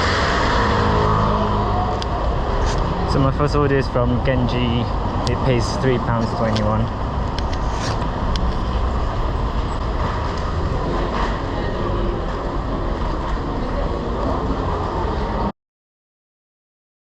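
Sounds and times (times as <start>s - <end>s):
wind rumble: 0.0s - 3.2s
city traffic: 0.0s - 15.6s
road noise: 0.0s - 15.6s.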